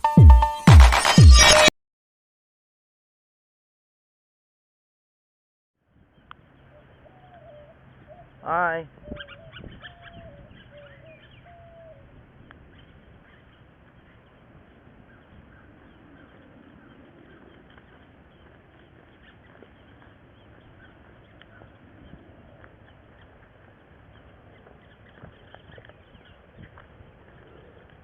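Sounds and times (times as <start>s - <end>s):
small bird chirps: 6.1s - 27.9s
short whining calls: 6.4s - 14.2s.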